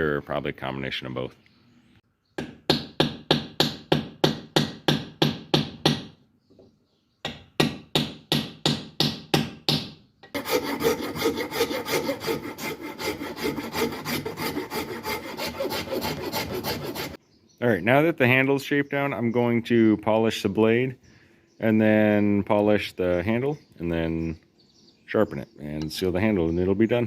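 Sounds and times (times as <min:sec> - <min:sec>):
file rasping: 0:10.3 - 0:17.2.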